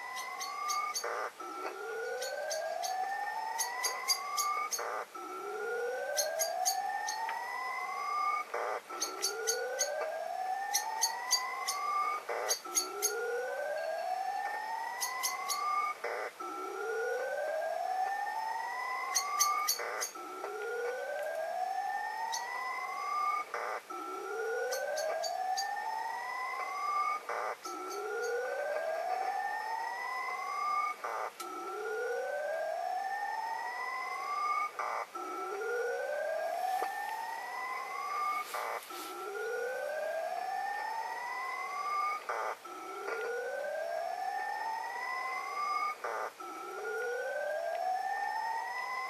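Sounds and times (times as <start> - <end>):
small birds chirping: 0.0 - 7.4, 8.1 - 13.6, 14.8 - 16.3, 19.0 - 20.3, 22.2 - 26.0, 26.9 - 29.1
burst of radio noise: 36.4 - 39.8.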